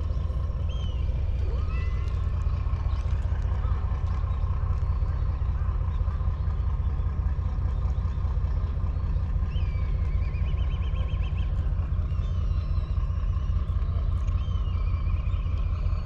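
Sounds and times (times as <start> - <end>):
steady low rumble: 0.0 - 16.0
bird warbling call: 9.5 - 15.9.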